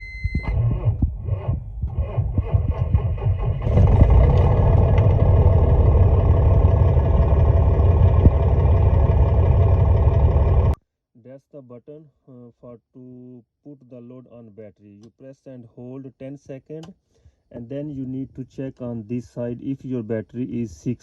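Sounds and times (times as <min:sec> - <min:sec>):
truck engine cranking and starting: 0:00.0 - 0:10.8.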